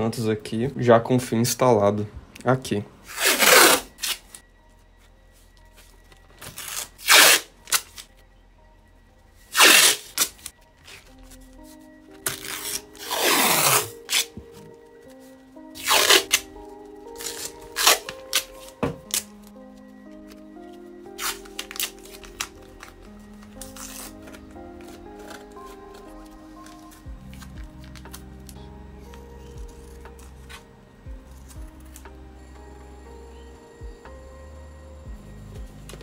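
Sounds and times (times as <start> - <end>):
soft background music: 0.0 - 36.0
masking tape ripping off roll: 3.1 - 4.4, 6.4 - 8.1, 9.5 - 10.5, 12.2 - 14.7, 15.8 - 16.5, 17.1 - 19.4, 21.1 - 23.0, 23.6 - 25.6.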